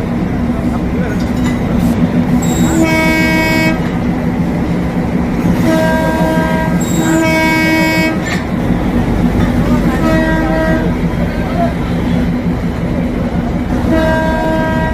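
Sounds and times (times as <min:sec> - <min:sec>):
train horn blasts: 0:02.4 - 0:03.9, 0:05.6 - 0:08.3, 0:09.7 - 0:11.1, 0:13.7 - 0:14.9.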